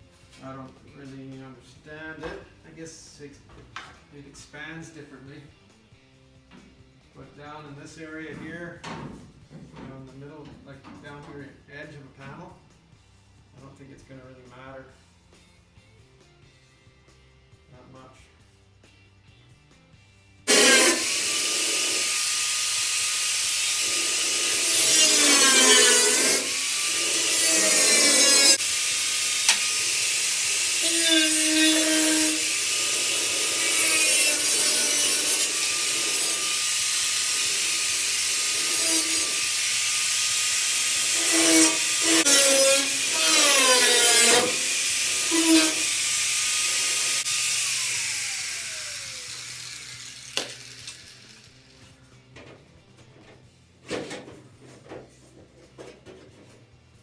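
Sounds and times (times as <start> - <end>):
angle grinder on sheet metal: 20.5 - 52.0.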